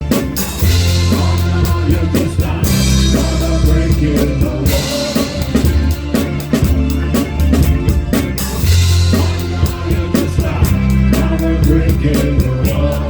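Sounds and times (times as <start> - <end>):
bass line: 0.0 - 13.0
drums and cymbals: 0.0 - 13.0
person singing: 0.7 - 6.4, 8.9 - 13.0.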